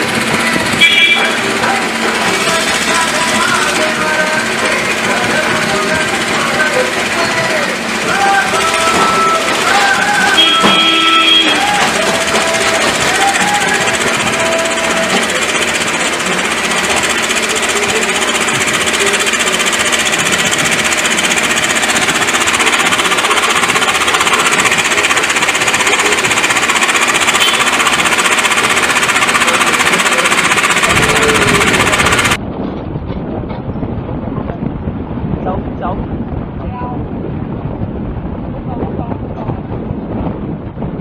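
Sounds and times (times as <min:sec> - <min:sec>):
rapid mechanical hammering: 0:00.0 - 0:32.4.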